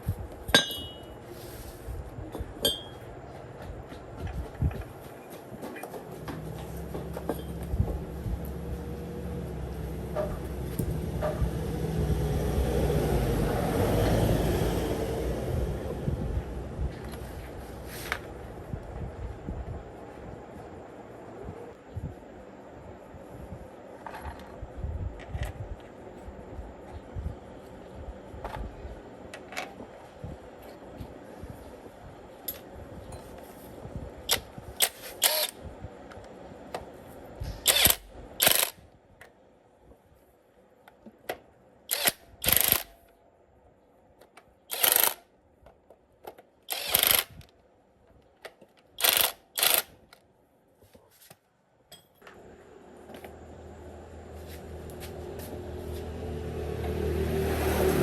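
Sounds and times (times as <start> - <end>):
hand tools clinking on metal: 0.5 - 1.1.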